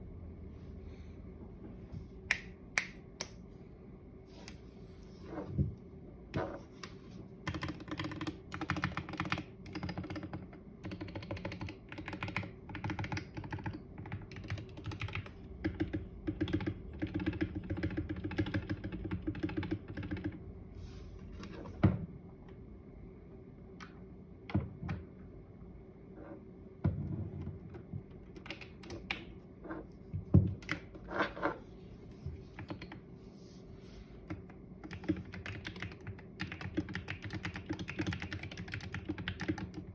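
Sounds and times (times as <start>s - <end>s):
keyboard typing: 7.4s - 20.4s, 28.3s - 29.2s, 34.3s - 39.9s.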